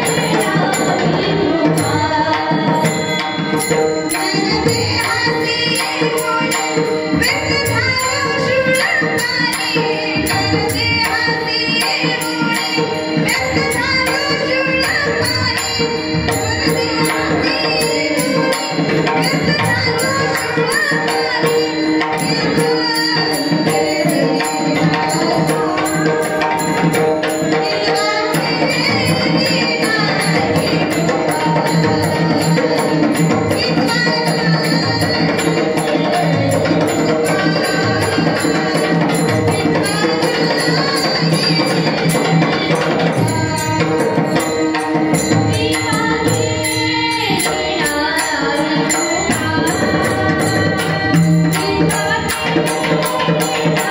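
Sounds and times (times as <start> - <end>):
person singing devotional melody: 0.0 - 53.9
small jingling percussion: 0.0 - 53.9.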